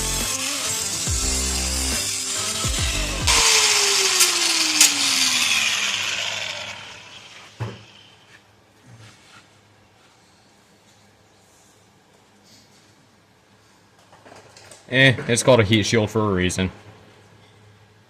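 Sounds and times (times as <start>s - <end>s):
angle grinder cutting metal: 0.0s - 8.2s
motor spinning down whine: 0.0s - 8.2s.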